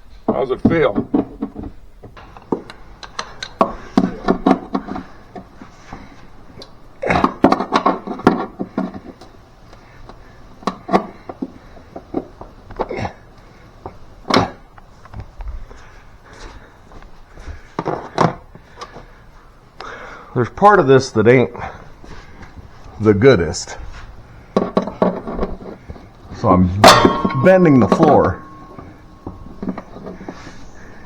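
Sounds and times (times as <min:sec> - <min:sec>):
tool knocking and scraping metal: 0:00.1 - 0:12.9, 0:24.5 - 0:31.0.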